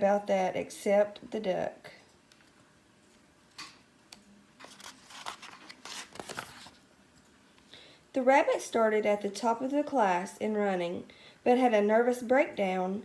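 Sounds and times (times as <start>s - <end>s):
book page turning: 4.6s - 6.8s.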